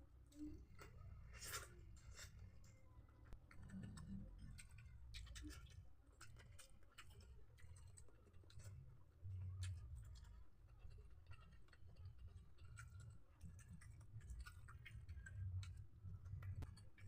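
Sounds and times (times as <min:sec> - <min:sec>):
person chewing: 0:00.8 - 0:02.4.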